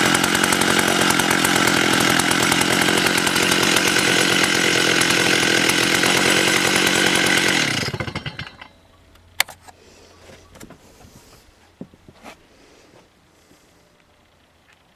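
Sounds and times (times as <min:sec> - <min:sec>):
chainsaw engine running: 0:00.0 - 0:08.7.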